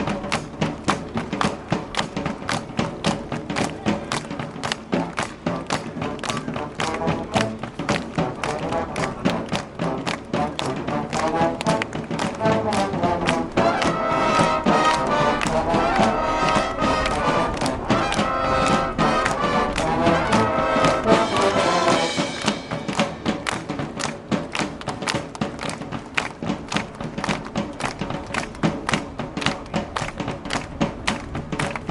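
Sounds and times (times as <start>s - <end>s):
marching drumbeat: 0.0s - 31.9s
brass band chords: 3.6s - 26.7s.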